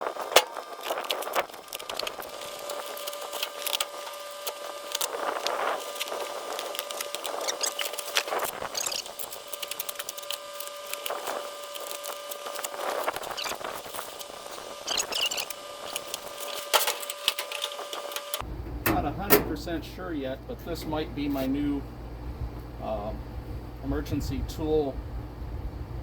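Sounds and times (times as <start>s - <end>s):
steady hum: 0.0s - 26.0s
short high squeaks: 1.8s - 18.4s
clicks and knocks of metal toolbox: 16.7s - 19.6s.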